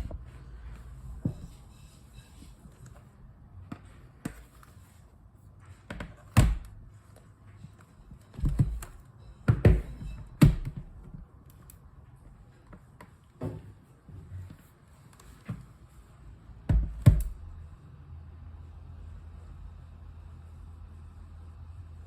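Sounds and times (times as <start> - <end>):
hard objects knocking and thumping: 8.3 - 11.2, 16.7 - 17.5.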